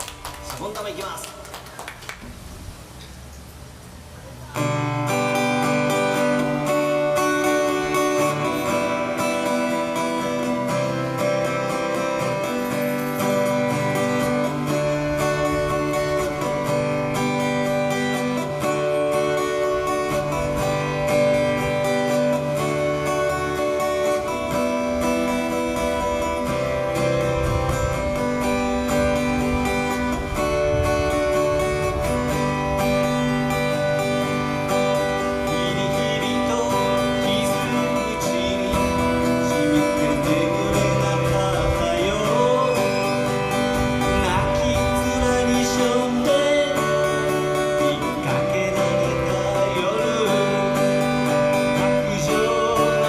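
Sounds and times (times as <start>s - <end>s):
acoustic guitar playing: 2.2s - 53.0s
person singing: 35.2s - 53.0s.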